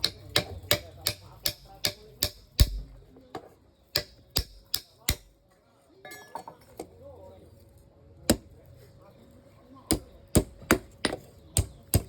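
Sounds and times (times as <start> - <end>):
hammer striking metal: 0.0 - 2.9, 3.9 - 5.3
faint metal clinks: 6.0 - 6.9.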